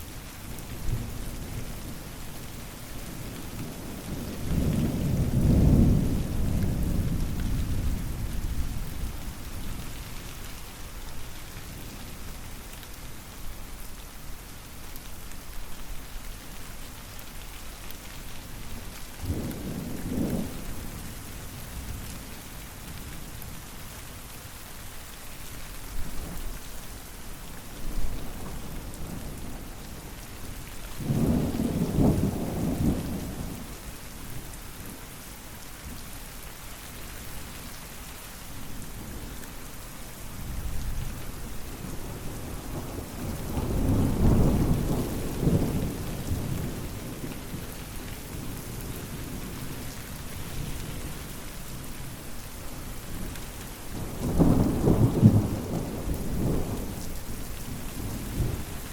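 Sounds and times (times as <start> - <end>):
rain falling: 0.0 - 58.9.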